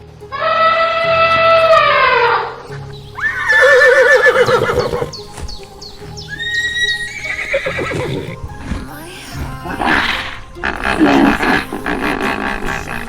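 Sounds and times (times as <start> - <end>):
background music: 0.0 - 13.0
animal calls: 0.3 - 9.0, 9.7 - 13.0
quavering whinny-like call: 0.4 - 5.3, 6.2 - 8.4.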